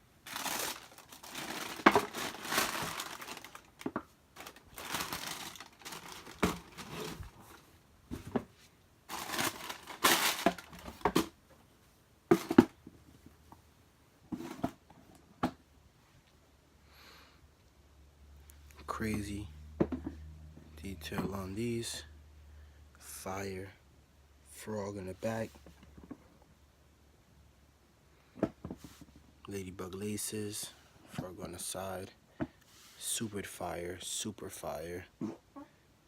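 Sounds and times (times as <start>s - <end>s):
packaging paper crinkling: 0.2s - 7.6s, 9.1s - 11.2s.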